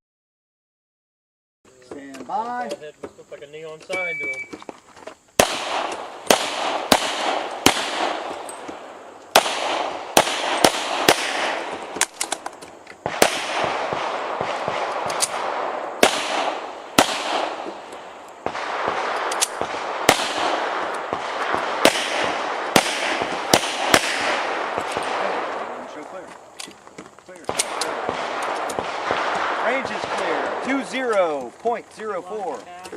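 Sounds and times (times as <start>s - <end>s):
pistol shots: 5.4s - 26.0s, 27.4s - 31.4s.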